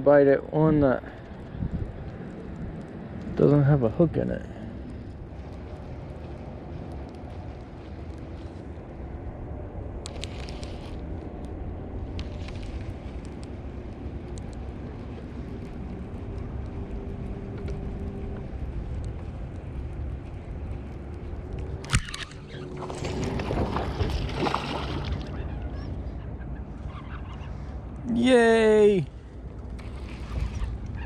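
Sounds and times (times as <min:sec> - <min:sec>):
boat engine rumble: 0:00.0 - 0:31.0
sharp click: 0:21.8 - 0:22.4.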